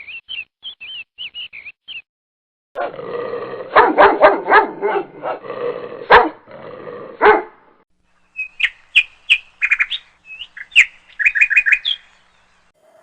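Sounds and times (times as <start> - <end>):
songbird chirping: 0.0 - 2.1, 8.0 - 13.0
loud dog bark: 3.7 - 5.4, 6.1 - 6.4, 7.2 - 7.6.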